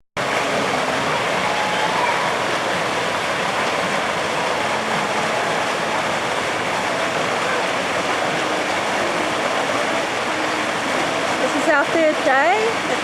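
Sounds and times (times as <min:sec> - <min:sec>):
running water rushing: 0:00.2 - 0:13.0.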